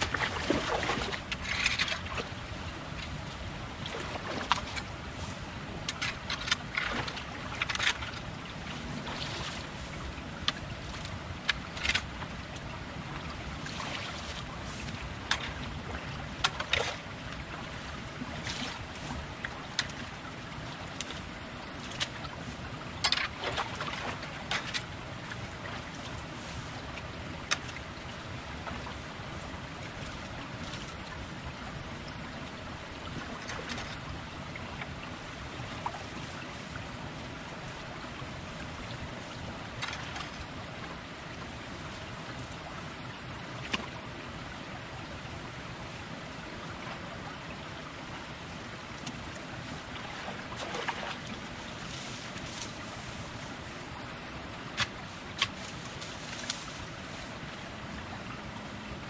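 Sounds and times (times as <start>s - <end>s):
creek water rushing: 0.0s - 59.0s.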